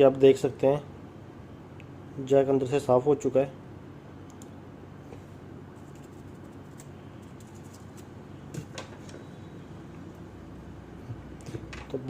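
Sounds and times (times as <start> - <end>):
low background hum: 0.0 - 12.0
faint clicks: 4.3 - 4.5.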